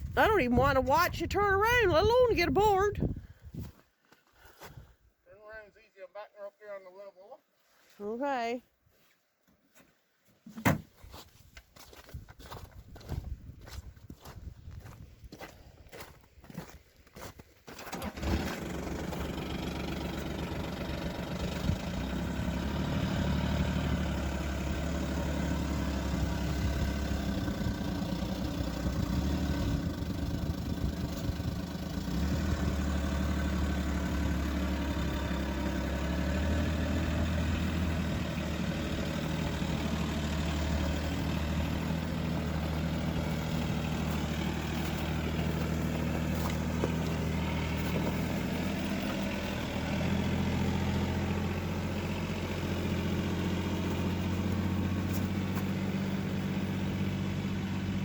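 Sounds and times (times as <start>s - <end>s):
quad bike engine running: 18.0s - 58.0s.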